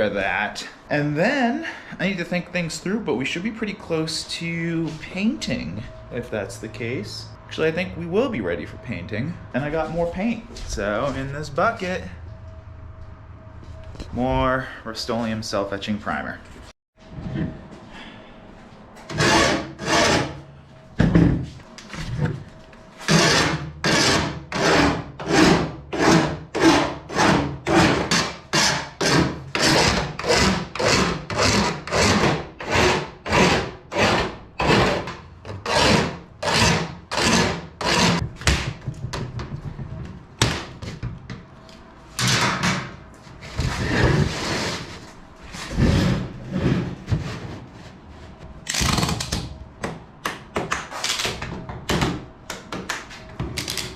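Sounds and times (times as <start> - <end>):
hand file rasping on aluminum: 19.1 - 20.4, 23.1 - 38.2.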